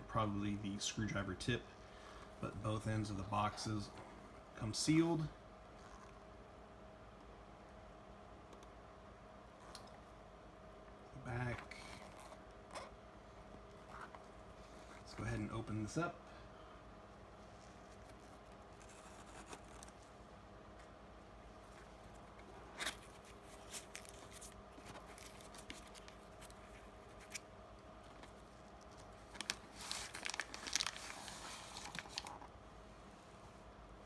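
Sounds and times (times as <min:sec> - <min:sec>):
cardboard box tearing and crinkling: 0:29.4 - 0:32.3.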